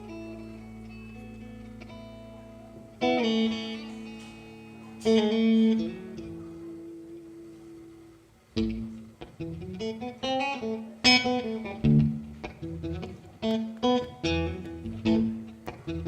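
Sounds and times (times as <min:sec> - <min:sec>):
percussive acoustic guitar: 0:11.1 - 0:16.0.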